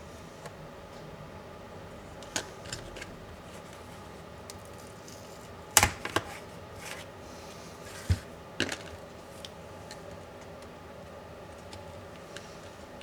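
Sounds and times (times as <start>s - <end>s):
clicks of laptop parts and tools: 5.8s - 6.3s.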